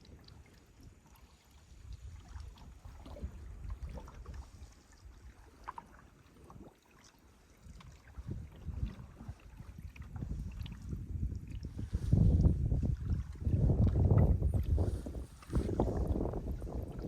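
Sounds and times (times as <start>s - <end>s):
paddle splashes and drips: 0.0s - 17.0s
wind on microphone: 1.7s - 5.4s, 7.6s - 17.0s.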